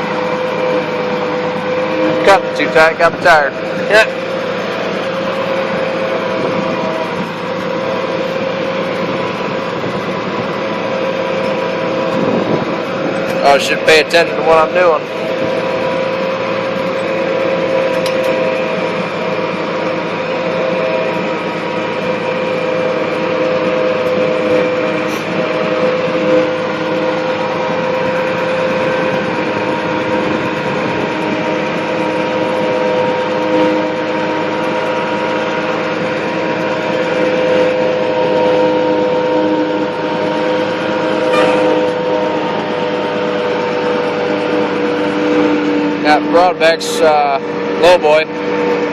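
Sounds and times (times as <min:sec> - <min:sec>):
tractor engine droning: 0:00.0 - 0:48.9.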